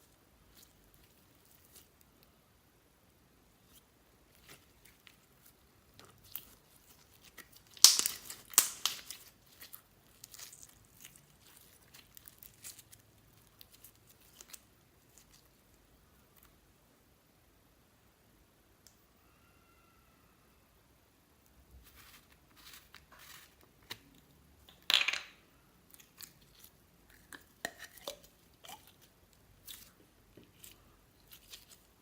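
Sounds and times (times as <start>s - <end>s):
sticky slime crackles and pops: 3.7s - 15.6s.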